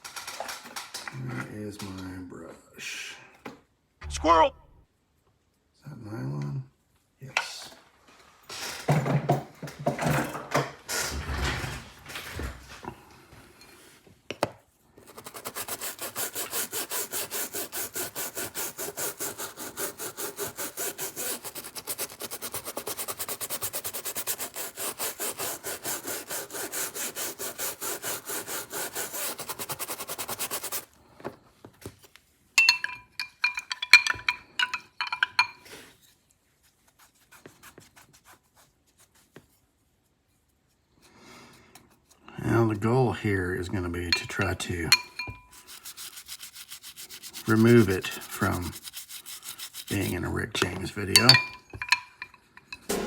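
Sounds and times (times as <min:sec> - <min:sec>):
brush scrubbing knife handle: 0:15.1 - 0:30.9, 0:32.6 - 0:39.4, 0:43.9 - 0:53.0
light ringing clinks: 0:32.6 - 0:35.7, 0:51.2 - 0:52.9.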